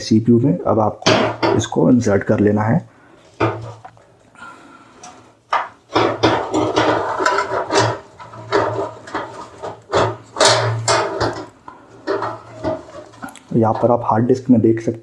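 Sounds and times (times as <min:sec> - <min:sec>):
hard disk knocks and scraping: 0:03.4 - 0:03.9, 0:05.0 - 0:14.1.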